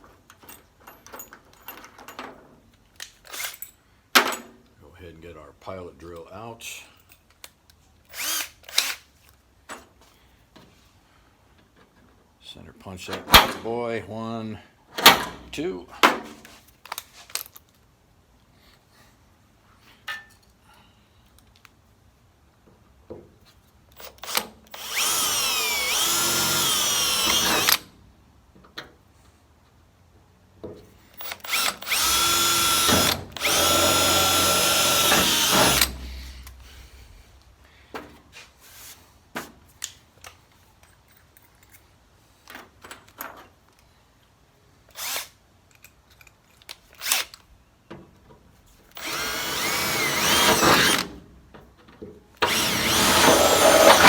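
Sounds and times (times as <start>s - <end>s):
power drill boring sheet metal: 8.2s - 8.6s, 24.0s - 27.8s, 31.4s - 36.6s, 49.0s - 51.1s, 52.4s - 54.0s
small handling clicks: 45.6s - 47.5s.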